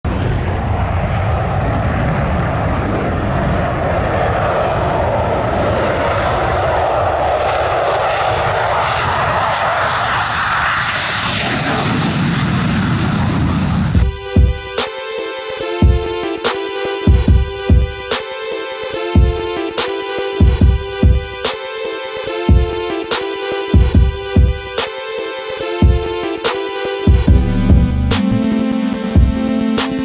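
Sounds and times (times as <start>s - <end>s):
aircraft flying past: 0.1s - 14.1s
music with a beat: 14.0s - 30.0s.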